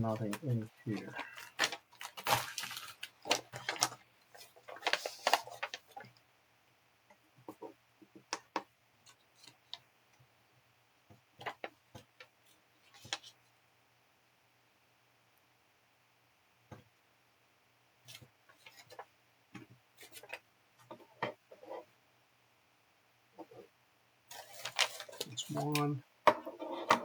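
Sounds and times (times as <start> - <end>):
packaging rustling: 0.3 - 6.1, 24.3 - 25.9.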